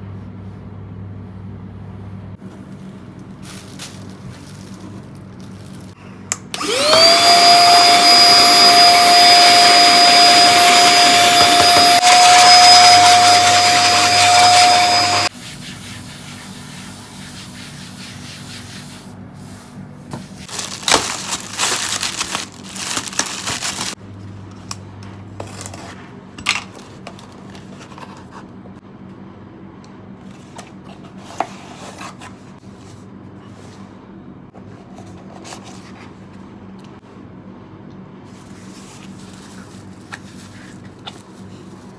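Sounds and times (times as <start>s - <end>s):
kitchen appliance motor whining: 6.5s - 15.3s.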